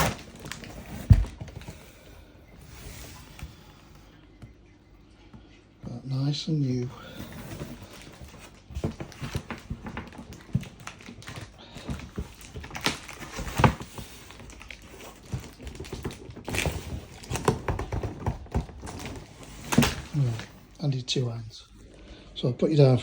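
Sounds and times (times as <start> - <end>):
packaging rustling: 0.0 - 4.1, 6.8 - 20.8.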